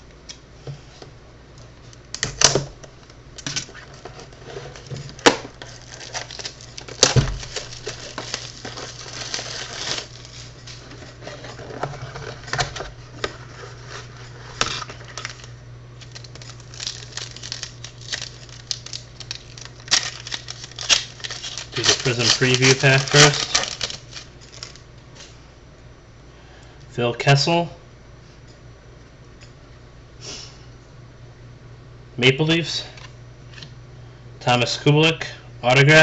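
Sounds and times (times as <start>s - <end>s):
wrapper crinkling and tearing: 3.6s - 25.3s
packs clicking and snapping: 14.6s - 24.8s.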